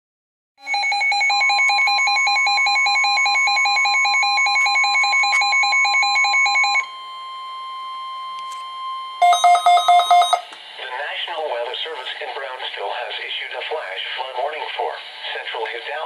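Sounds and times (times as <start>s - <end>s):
steady high alarm tone: 0.6s - 10.6s
rapidly pulsing electronic beep: 0.7s - 6.9s, 9.2s - 10.5s.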